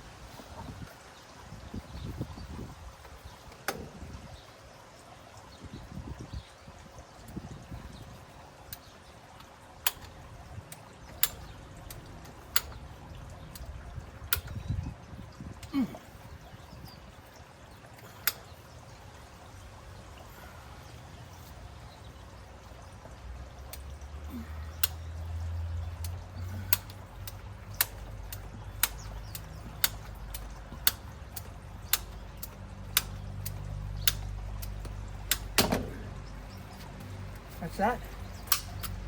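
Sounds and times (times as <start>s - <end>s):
low steady hum: 0.0s - 39.0s
pipe cutter ratchet clicking: 8.7s - 14.7s, 17.9s - 18.8s, 23.6s - 39.0s.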